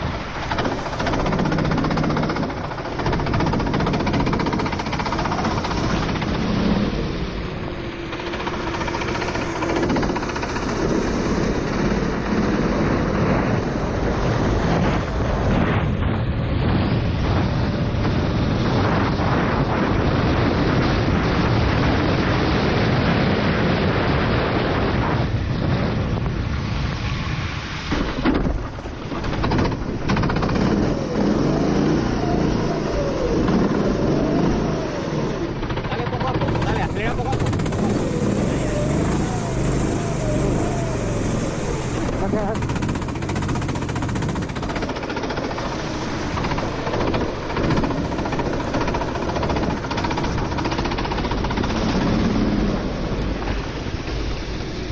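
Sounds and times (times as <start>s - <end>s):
wind and spray noise: 0.0s - 54.9s
kart engine revving: 0.2s - 13.4s, 29.1s - 53.6s.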